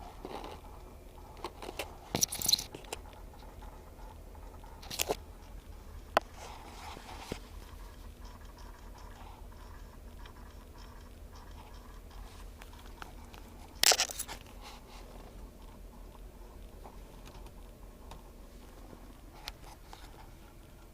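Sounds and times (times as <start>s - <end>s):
low hum: 0.0s - 20.9s
faint irregular clicking: 7.3s - 20.9s.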